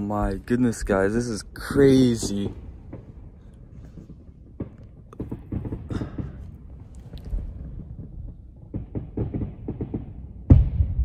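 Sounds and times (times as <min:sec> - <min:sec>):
distant fireworks popping: 0:00.0 - 0:11.0
loud fireworks bangs: 0:00.0 - 0:11.0
steady low rumble: 0:00.0 - 0:11.0.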